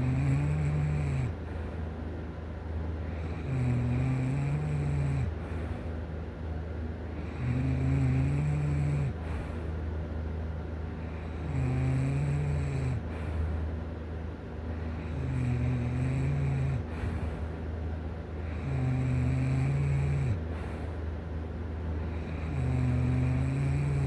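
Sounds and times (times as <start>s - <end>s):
person snoring: 0.0s - 1.4s, 3.1s - 5.4s, 7.2s - 9.3s, 11.1s - 13.2s, 15.0s - 16.9s, 18.4s - 20.5s, 22.1s - 24.0s
steady low hum: 0.0s - 24.0s.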